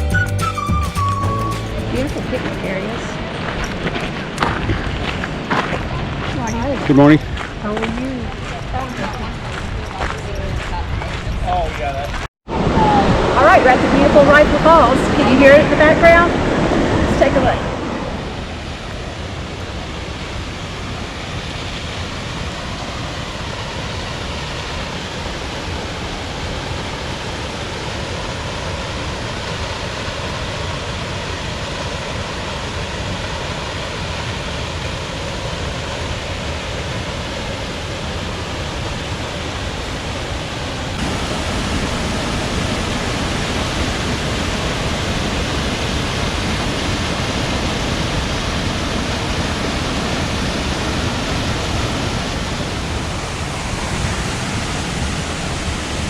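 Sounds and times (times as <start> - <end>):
waterfall roar: 12.5 - 56.0.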